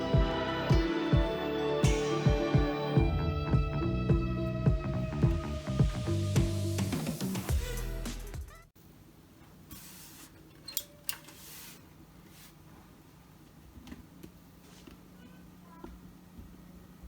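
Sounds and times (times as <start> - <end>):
background music: 0.0 - 8.7.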